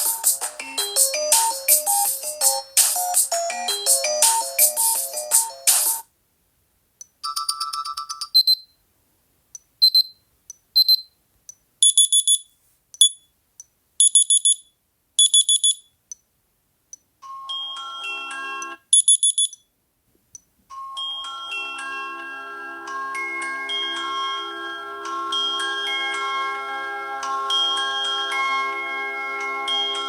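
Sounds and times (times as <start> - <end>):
phone alarm beeping: 7.2 - 8.7, 9.8 - 10.2, 10.8 - 11.1, 11.8 - 13.2, 14.0 - 14.6, 15.2 - 15.9, 18.6 - 19.6.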